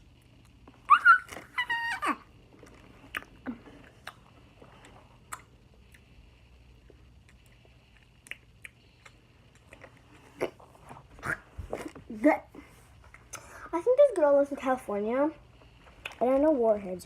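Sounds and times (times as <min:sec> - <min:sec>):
person eating hard candy: 0:02.4 - 0:06.2, 0:06.8 - 0:12.0.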